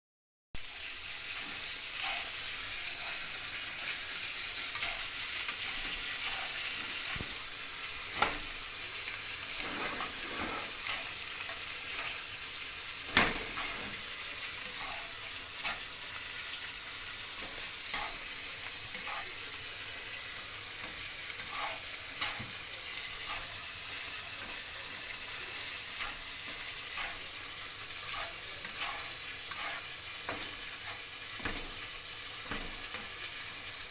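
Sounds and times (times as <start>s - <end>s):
rice sizzling in a frying pan: 0.6s - 33.9s
spatula scraping a pan: 1.3s - 33.9s
spatula knocking on a pan: 29.6s - 31.8s, 32.4s - 33.1s.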